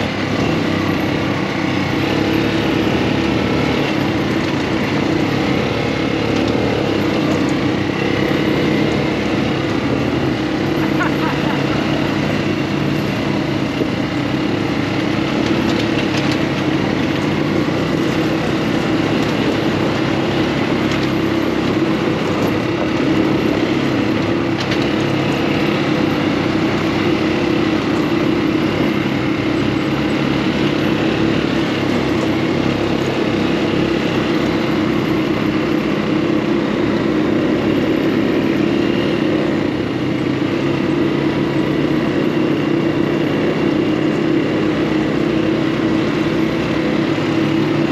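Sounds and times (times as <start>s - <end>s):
buggy engine droning: 0.0s - 47.9s
road and wind noise: 0.0s - 47.9s.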